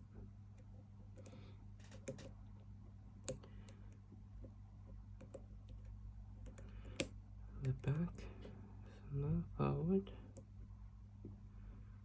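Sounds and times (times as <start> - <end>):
low steady hum: 0.0 - 12.0
lock pick scraping and clicking: 1.2 - 2.3.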